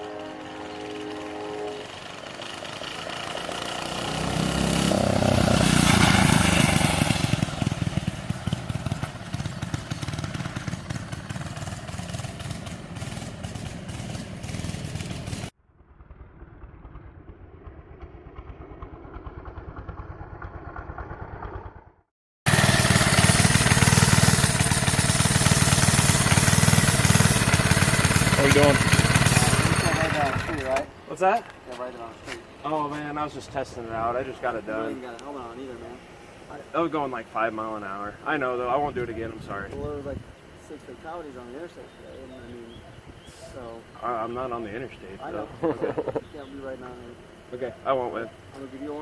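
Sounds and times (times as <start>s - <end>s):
mini bike engine running: 0.0s - 15.5s, 16.9s - 21.8s, 22.5s - 30.9s.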